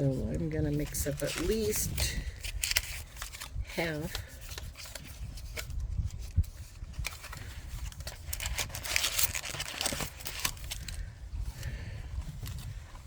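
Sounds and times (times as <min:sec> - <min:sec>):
packaging tearing: 0:02.4 - 0:05.8, 0:07.0 - 0:11.0
food packaging crinkling: 0:07.0 - 0:11.0.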